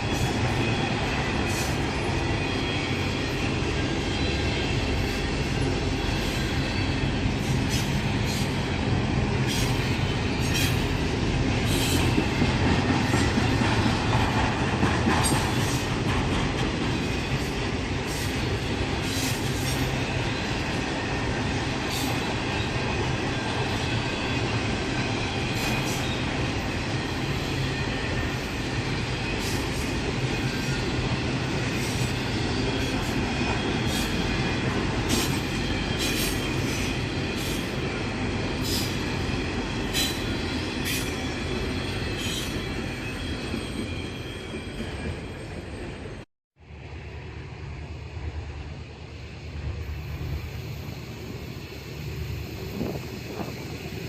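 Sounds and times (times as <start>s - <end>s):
train railcars rumbling: 0.0s - 54.0s
wheels clicking over rail joints: 11.7s - 18.2s.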